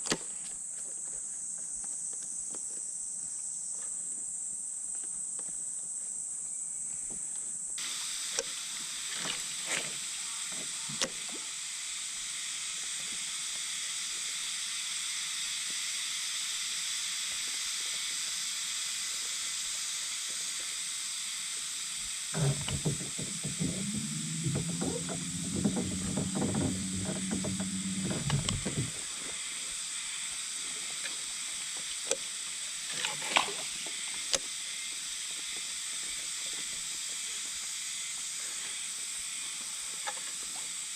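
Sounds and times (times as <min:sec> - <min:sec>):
knocks and clicks: 0:22.4 - 0:29.0
mechanical whir: 0:22.4 - 0:29.0
insects buzzing: 0:22.4 - 0:29.1.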